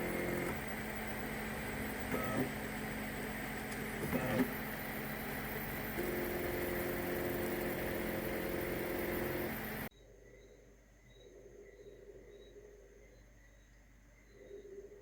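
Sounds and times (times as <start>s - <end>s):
printer humming: 0.0s - 9.9s
stepper motor whine: 0.0s - 9.9s.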